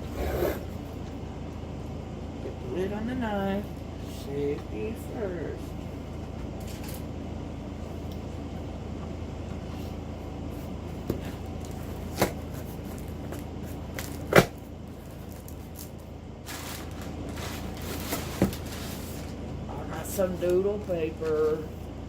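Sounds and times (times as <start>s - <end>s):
steady low hum: 0.0s - 22.0s
packaging rustling: 11.5s - 19.4s.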